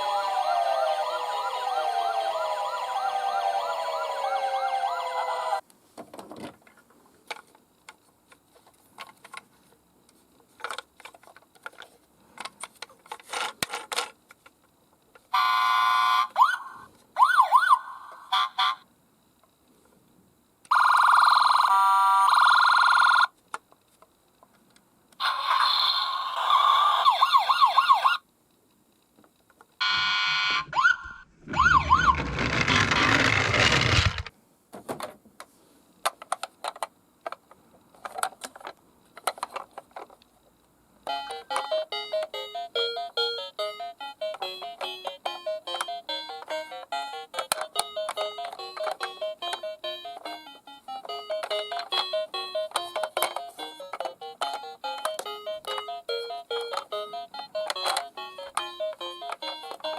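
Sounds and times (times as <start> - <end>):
toy sirens wailing: 0.0 - 5.6, 15.3 - 18.8, 20.7 - 23.3, 25.2 - 28.2, 29.8 - 34.1.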